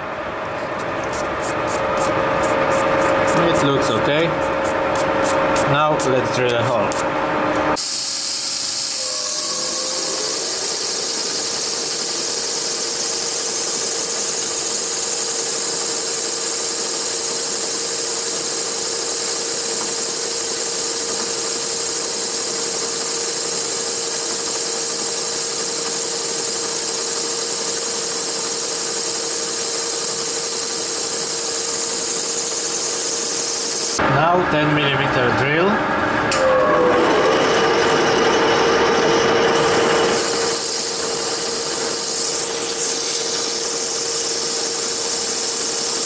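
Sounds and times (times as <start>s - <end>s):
metal lathe drilling steel: 7.8s - 34.0s, 36.8s - 46.0s.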